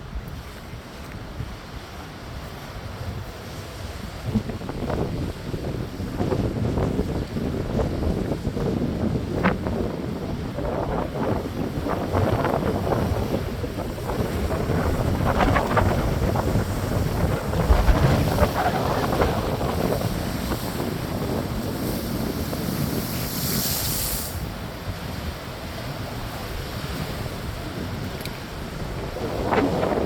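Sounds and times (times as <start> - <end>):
wind buffeting microphone: 0.0 - 30.0
ocean surf breaking: 0.7 - 30.0
hiss of washing water: 21.7 - 24.5.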